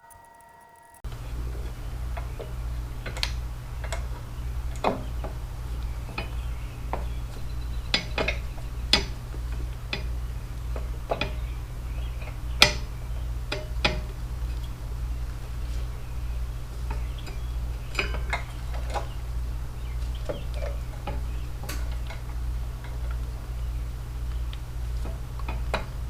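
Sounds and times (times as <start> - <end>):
metal parts clinking: 0.0 - 1.0.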